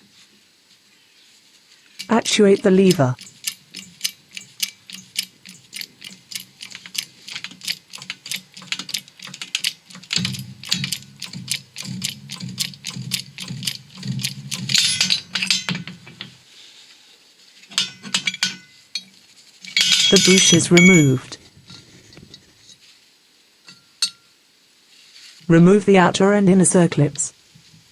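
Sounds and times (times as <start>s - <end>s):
hydraulic press clicking: 2.0s - 16.3s, 17.8s - 19.1s, 19.7s - 21.2s.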